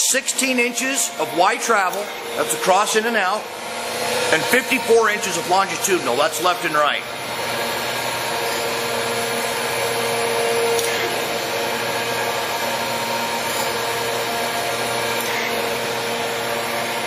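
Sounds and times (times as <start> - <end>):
steady hum: 0.0 - 17.0
surface grinder whirring: 0.0 - 17.0.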